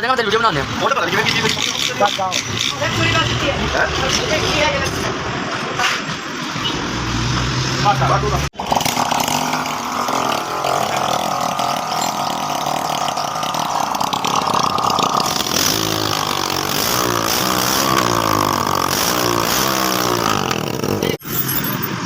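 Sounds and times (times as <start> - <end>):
motorcycle engine revving: 7.3 - 21.7.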